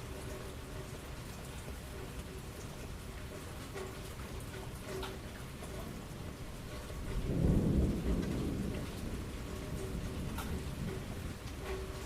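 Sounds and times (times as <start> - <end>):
rain pattering: 0.0 - 12.0
thunder rumbling: 6.0 - 12.0.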